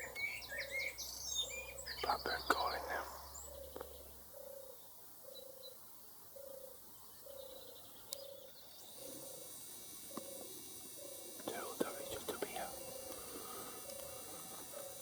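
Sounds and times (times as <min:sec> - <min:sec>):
turtle dove purring: 0:08.4 - 0:15.0.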